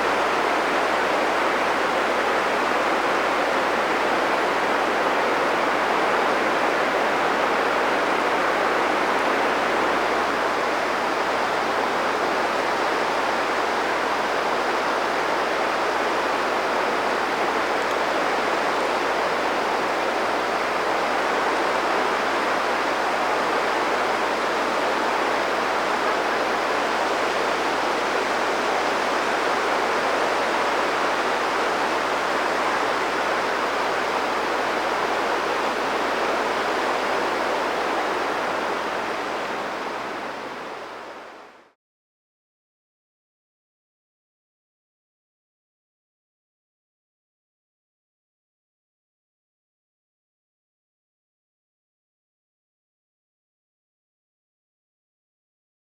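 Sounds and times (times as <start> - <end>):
rushing flowing water: 0.0 - 41.8.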